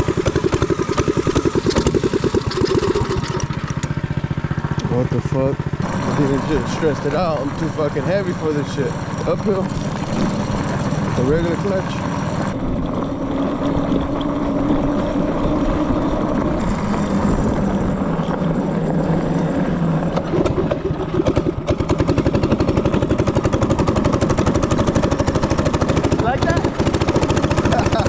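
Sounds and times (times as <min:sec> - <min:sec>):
small engine putter: 0:00.0 - 0:28.0.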